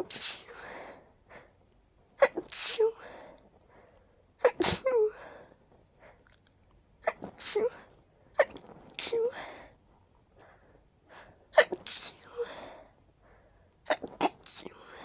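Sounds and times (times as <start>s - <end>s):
person sneezing: 4.4s - 5.2s, 11.6s - 12.4s, 13.9s - 14.7s.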